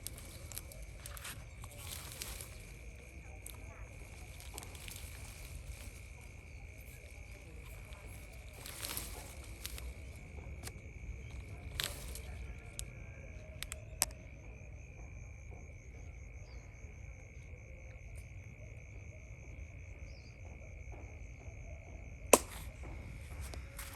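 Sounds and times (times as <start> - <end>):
insects trilling: 0.0 - 23.9
rapidly pulsing insect chirp: 0.0 - 23.9
sharp clicks: 22.4 - 22.7.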